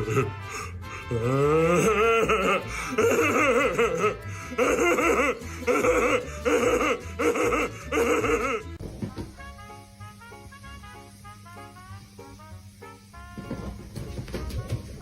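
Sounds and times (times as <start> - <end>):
background music: 0.0 - 15.0
laughter-like vocal calls: 1.9 - 8.7.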